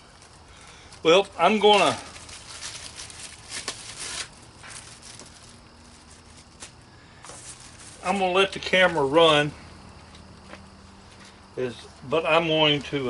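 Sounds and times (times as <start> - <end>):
packaging rustling: 0.1 - 9.1.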